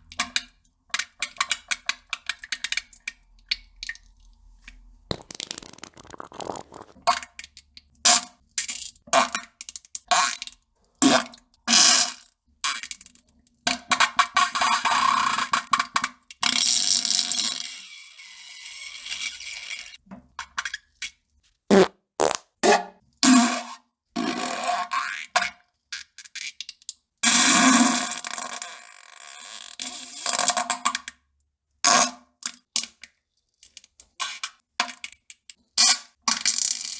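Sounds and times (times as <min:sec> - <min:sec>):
farts: 0:05.1 - 0:07.1, 0:21.7 - 0:22.5.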